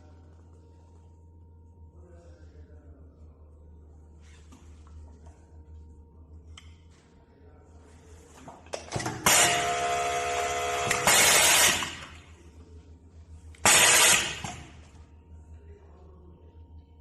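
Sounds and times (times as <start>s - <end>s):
sewing machine running: 9.2s - 12.2s, 13.6s - 14.7s.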